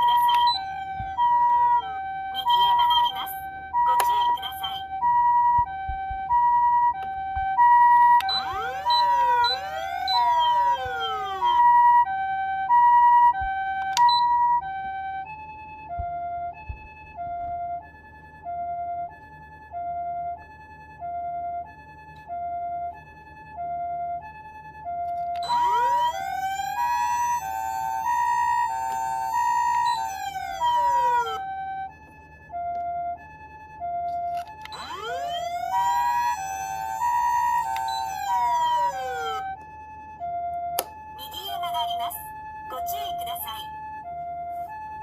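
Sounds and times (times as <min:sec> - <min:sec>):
sweeping siren tones: 0:00.0 - 0:21.7, 0:23.6 - 0:45.0
rising siren wail: 0:00.0 - 0:45.0
two-tone ambulance siren: 0:00.0 - 0:45.0.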